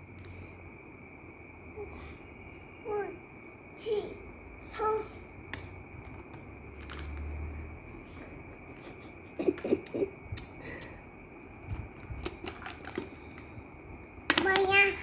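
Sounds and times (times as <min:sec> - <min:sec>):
small toys clicking and tapping: 0:11.7 - 0:13.6, 0:14.2 - 0:14.9.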